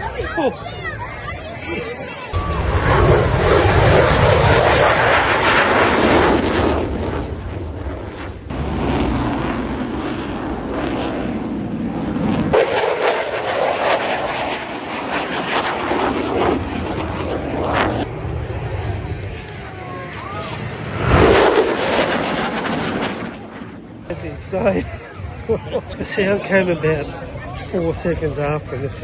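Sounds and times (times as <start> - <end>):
deep explosion boom: 5.6 - 12.6.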